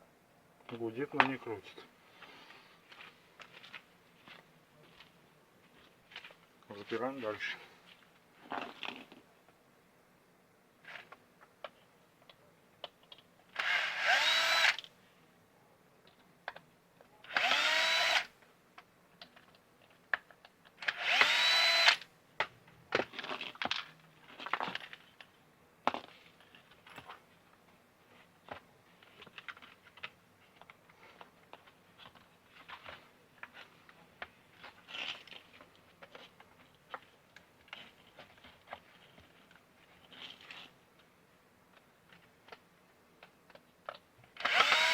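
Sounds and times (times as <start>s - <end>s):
cordless drill whining: 13.6s - 14.8s, 17.3s - 18.3s, 20.8s - 22.0s, 44.4s - 44.9s.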